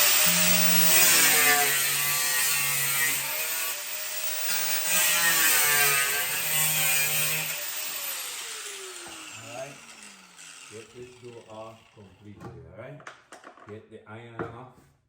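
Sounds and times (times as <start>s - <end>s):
power saw cutting through door: 0.0s - 12.3s.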